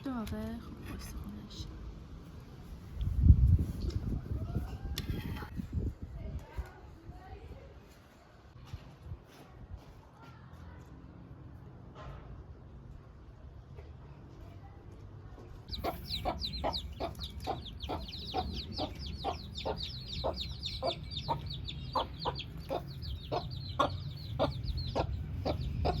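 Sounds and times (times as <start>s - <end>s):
chickens clucking: 15.7s - 26.0s.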